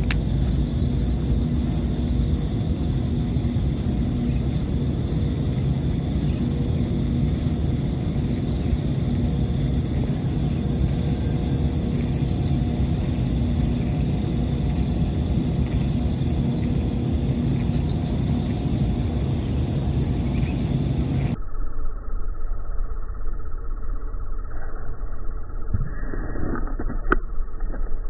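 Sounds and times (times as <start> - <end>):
low engine rumble: 0.0 - 21.4.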